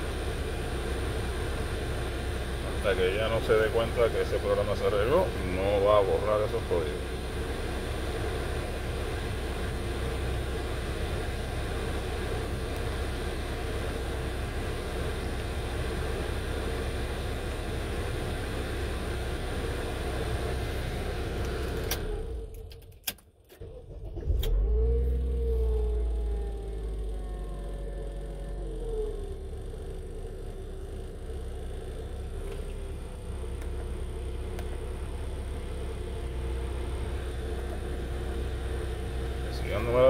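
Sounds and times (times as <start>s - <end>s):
car engine idling: 0.0s - 23.0s, 23.6s - 40.0s
car engine starting: 0.0s - 40.0s.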